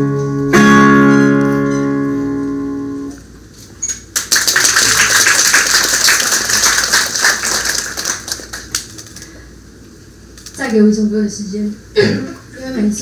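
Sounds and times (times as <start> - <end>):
acoustic guitar chord ringing: 0.0 - 3.2
audience clapping: 4.1 - 9.4.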